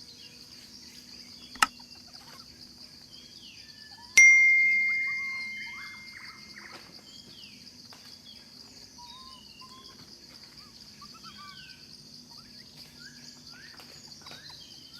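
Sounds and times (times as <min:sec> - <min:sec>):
bell-like ding: 0:04.2 - 0:06.6
bird chirps and whistles: 0:04.5 - 0:06.6
high insect drone: 0:04.9 - 0:14.9.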